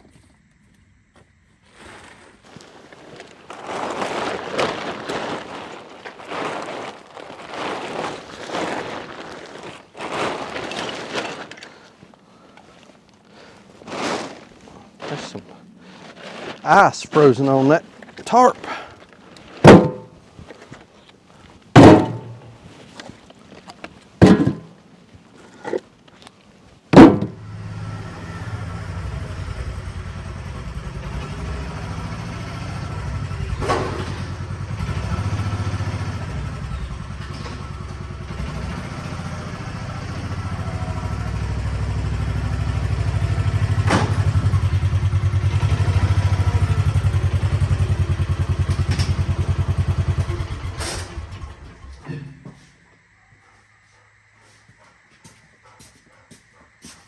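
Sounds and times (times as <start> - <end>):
door shutting with a thud: 19.6 - 20.1, 21.8 - 22.5, 27.0 - 27.4, 43.8 - 44.6
vehicle engine running: 27.0 - 52.1.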